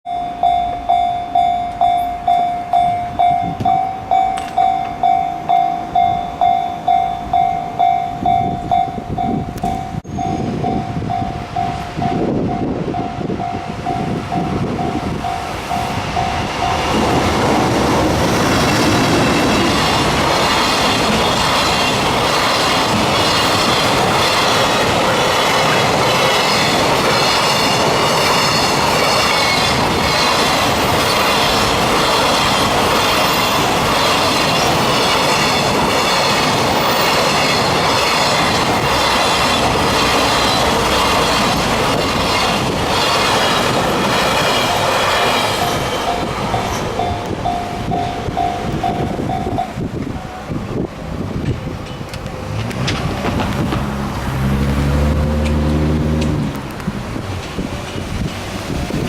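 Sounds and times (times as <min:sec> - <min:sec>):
metallic ringing from wheels: 0:00.0 - 0:16.9
train rumbling past: 0:00.1 - 0:59.0.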